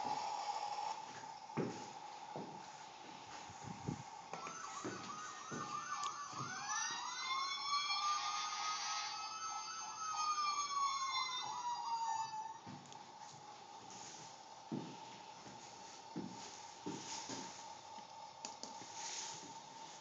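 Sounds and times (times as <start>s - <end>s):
toy fire truck electronic siren: 4.4s - 12.7s.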